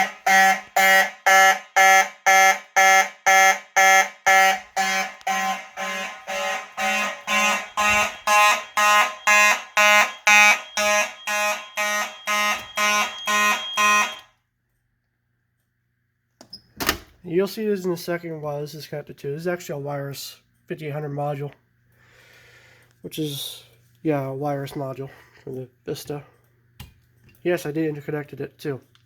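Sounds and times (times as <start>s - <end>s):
fire alarm horns blasting: 0.0s - 14.4s.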